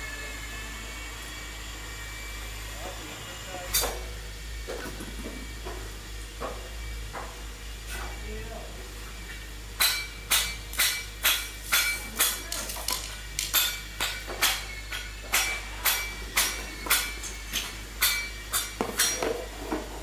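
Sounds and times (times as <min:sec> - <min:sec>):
hammer striking metal: 0:09.8 - 0:19.3.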